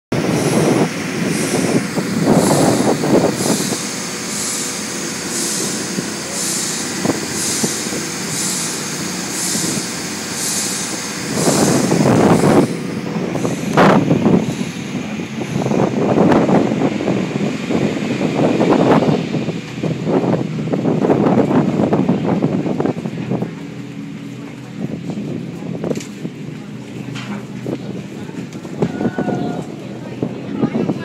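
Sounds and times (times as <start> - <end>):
low engine rumble: 0.1 - 31.0
steam engine hissing: 0.2 - 23.4.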